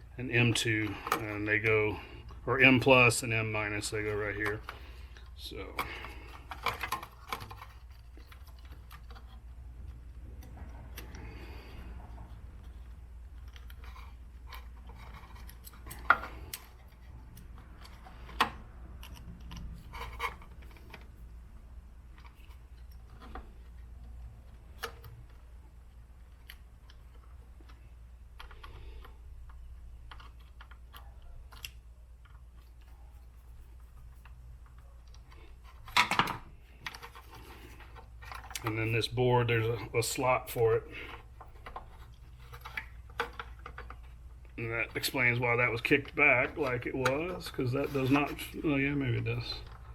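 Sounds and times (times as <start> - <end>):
steady low hum: 0.0 - 49.9
small parts clicking and tapping: 4.0 - 21.4, 22.0 - 38.8.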